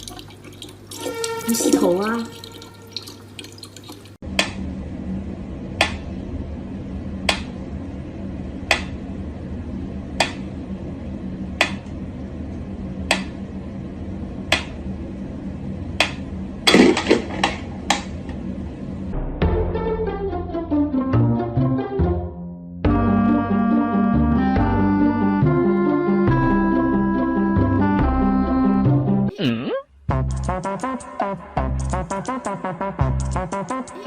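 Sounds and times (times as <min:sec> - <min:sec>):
steady low hum: 0:04.2 - 0:19.5.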